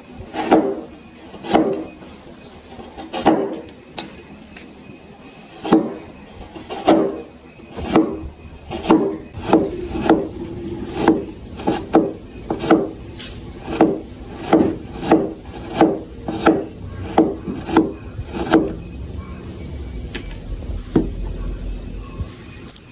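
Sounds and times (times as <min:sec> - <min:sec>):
hand saw cutting wood: 0:07.8 - 0:18.9
faint low rumble: 0:09.4 - 0:22.6.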